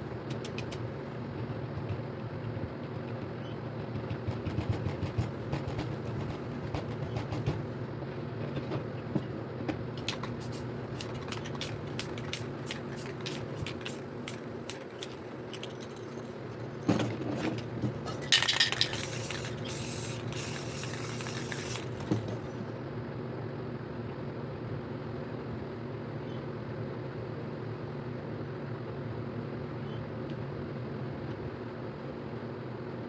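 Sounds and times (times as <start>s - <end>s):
steady low hum: 0.0s - 33.0s
spray can rattling clicks: 10.0s - 16.3s, 18.2s - 22.2s
spray paint hissing: 10.1s - 16.2s, 18.4s - 22.1s.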